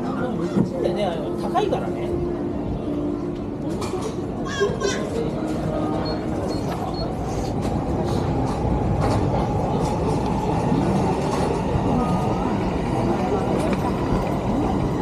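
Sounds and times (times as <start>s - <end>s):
train rumbling past: 7.0s - 15.0s.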